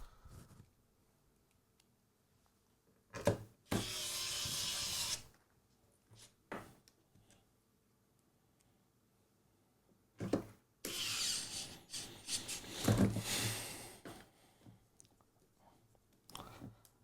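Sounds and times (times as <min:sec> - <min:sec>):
rubbing and scraping by hand: 0:03.8 - 0:05.3, 0:10.9 - 0:13.6.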